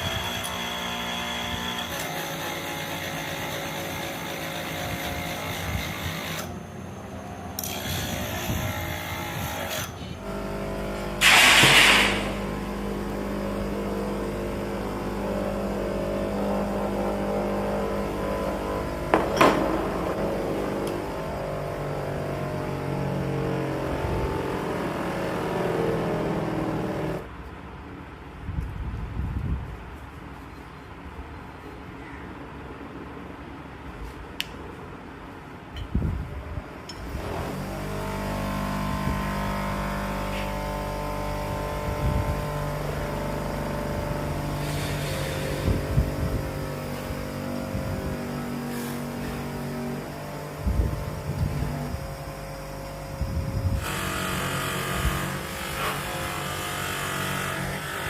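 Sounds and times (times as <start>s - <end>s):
power machinery droning: 0.0s - 27.4s, 35.9s - 58.0s
loud harsh burst: 11.2s - 12.8s.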